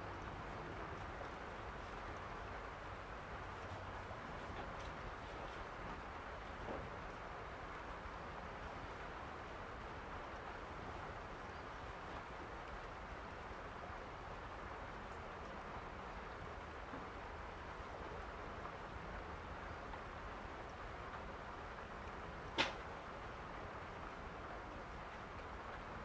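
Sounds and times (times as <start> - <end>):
rain falling: 0.0 - 26.0
sharp click: 22.6 - 22.8.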